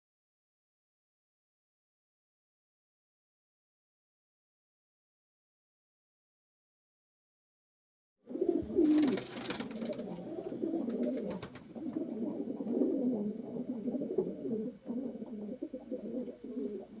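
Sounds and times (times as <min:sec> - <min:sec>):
pigeons cooing: 0:08.3 - 0:17.0.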